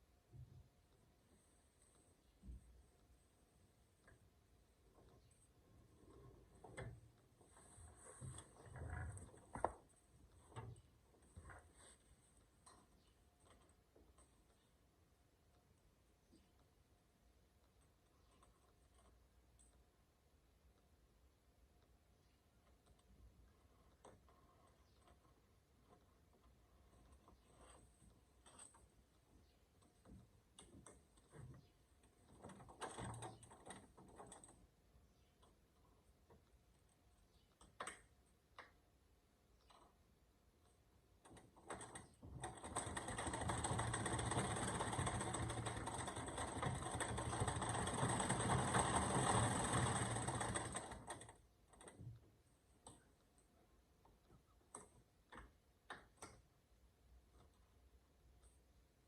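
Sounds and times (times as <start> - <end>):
sewing machine mechanism clicks: 41.2 - 52.2
treadle sewing machine running: 41.8 - 51.4.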